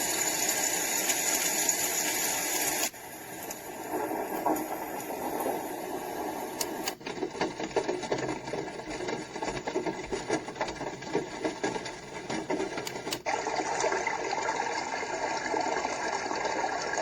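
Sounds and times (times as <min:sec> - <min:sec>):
crackly ticking noise from speaker: 0:00.0 - 0:17.0
sound machine clicks: 0:06.4 - 0:08.5, 0:10.0 - 0:13.3.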